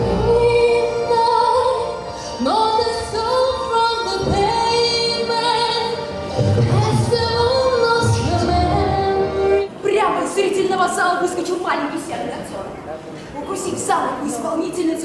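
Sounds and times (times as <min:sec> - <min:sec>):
musical accompaniment: 0:00.0 - 0:09.8
woman singing operatic notes: 0:00.0 - 0:09.8.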